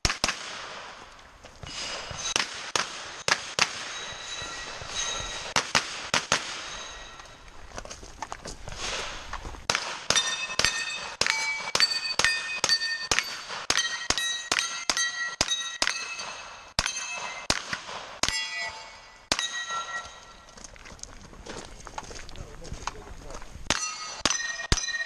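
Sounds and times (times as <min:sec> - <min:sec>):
steel targets clanging: 0:01.6 - 0:07.5, 0:10.0 - 0:17.5, 0:18.2 - 0:20.6, 0:23.7 - 0:25.0
rapid gunshots: 0:01.8 - 0:04.1, 0:05.4 - 0:06.8, 0:09.7 - 0:18.4.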